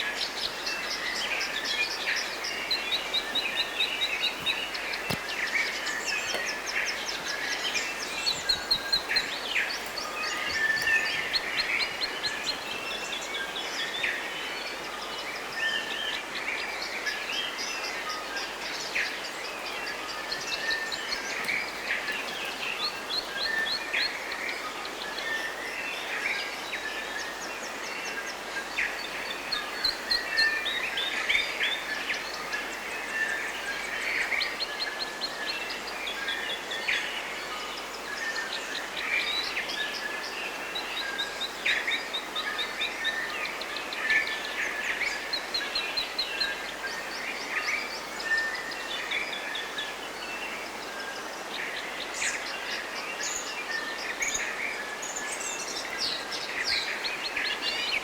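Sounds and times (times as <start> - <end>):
birds chirping and singing: 0.4 - 13.7.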